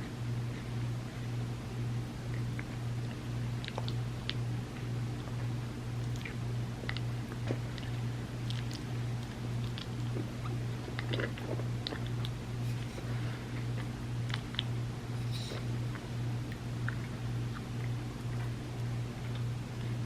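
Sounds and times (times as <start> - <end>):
steady low hum: 0.0 - 20.0
chewing and wet mouth clicks: 2.3 - 5.4, 6.0 - 12.8, 13.7 - 14.7, 15.3 - 20.0.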